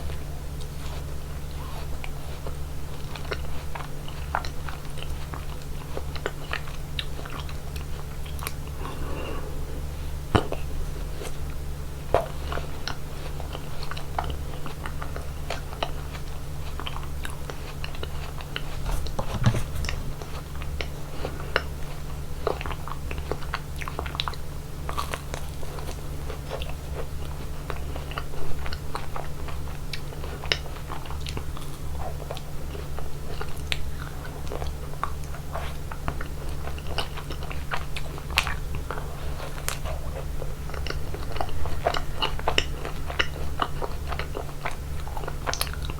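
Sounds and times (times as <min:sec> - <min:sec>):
biting and chewing ice cream: 0:00.0 - 0:45.9
steady low hum: 0:00.0 - 0:45.9.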